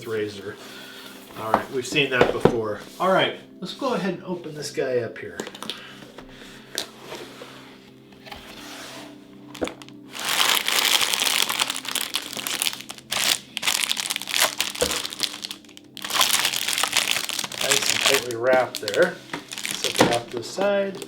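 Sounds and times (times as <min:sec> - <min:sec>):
packaging wrap crinkling: 0:09.5 - 0:21.0.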